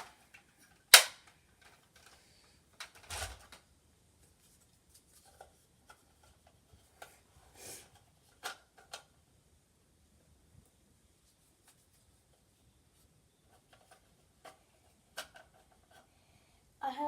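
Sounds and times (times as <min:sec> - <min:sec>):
sharp plastic clicks: 0:00.0 - 0:02.2
toy blaster clicks and rustles: 0:00.0 - 0:03.7, 0:07.8 - 0:09.1, 0:13.5 - 0:16.1.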